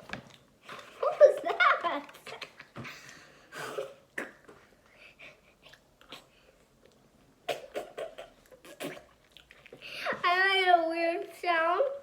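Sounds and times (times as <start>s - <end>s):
chewing: 5.6s - 7.1s, 8.4s - 9.9s.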